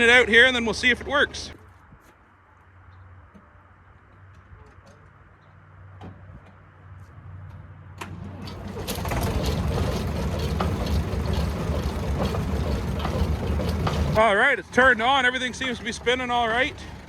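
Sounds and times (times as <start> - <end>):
tractor engine running: 0.0 - 1.6, 8.0 - 17.0.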